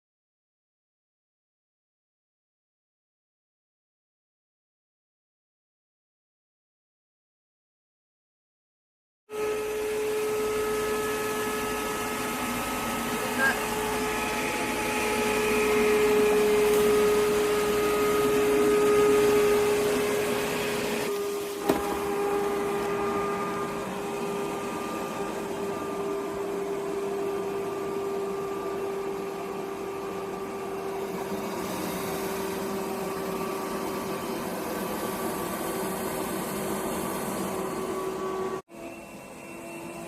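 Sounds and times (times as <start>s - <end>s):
robot vacuum motor hum: 9.4s - 40.0s.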